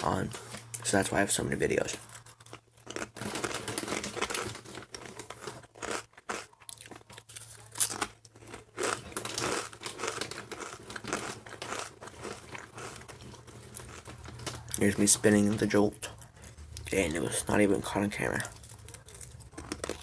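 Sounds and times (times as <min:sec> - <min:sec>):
snack bag crackling: 0:00.0 - 0:20.0.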